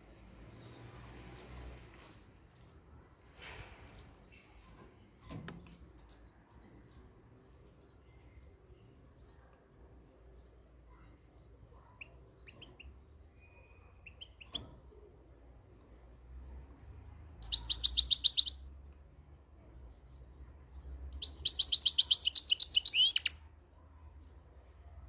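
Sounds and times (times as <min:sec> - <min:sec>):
goldfinch singing: 0:17.4 - 0:18.6, 0:21.1 - 0:23.4.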